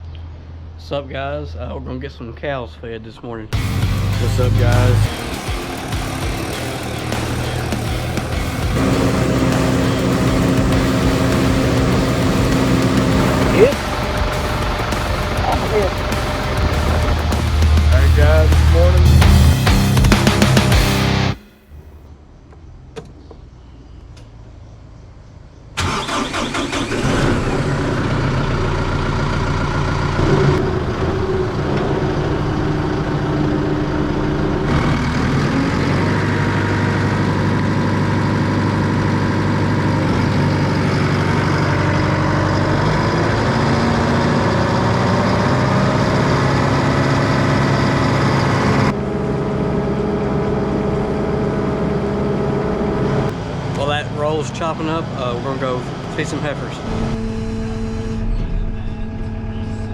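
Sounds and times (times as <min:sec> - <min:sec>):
tractor engine cranking: 0:03.6 - 0:21.5, 0:25.8 - 0:48.9
tractor engine running: 0:03.6 - 0:22.0, 0:25.8 - 0:59.9.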